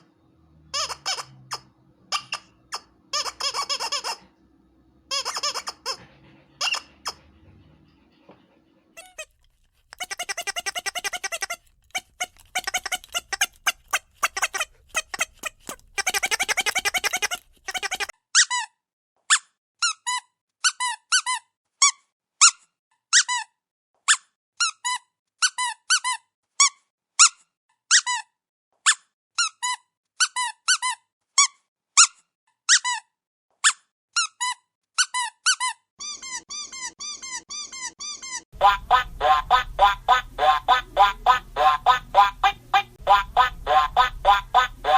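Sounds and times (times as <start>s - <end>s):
faint low hum: 0.0s - 18.0s, 38.6s - 44.9s
squeaky dog toy squeaking: 0.7s - 4.4s, 5.1s - 7.6s, 9.0s - 23.5s, 24.1s - 44.9s.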